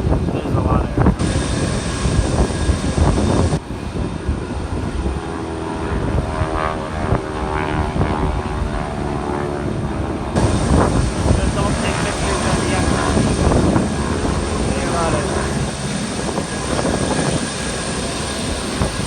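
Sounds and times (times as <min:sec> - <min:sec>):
heavy low rumble: 0:00.0 - 0:05.2, 0:09.7 - 0:19.0
propeller airplane engines droning: 0:00.0 - 0:19.0.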